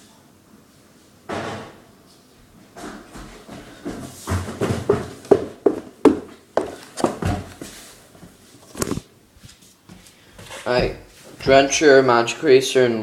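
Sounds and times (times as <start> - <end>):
objects knocking and clattering: 2.8 - 7.6.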